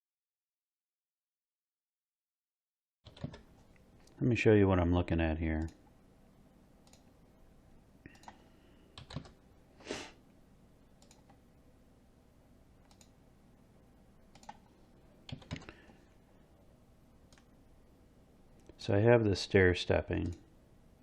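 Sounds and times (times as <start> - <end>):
mouse and keyboard clicks: 3.1 - 4.2, 9.0 - 9.4, 11.0 - 11.4, 12.8 - 13.2, 14.3 - 14.7, 15.3 - 15.8.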